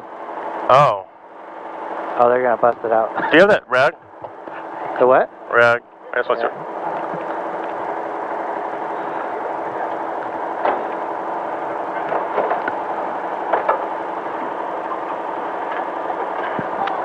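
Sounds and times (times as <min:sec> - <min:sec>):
engine running: 0:00.0 - 0:17.0.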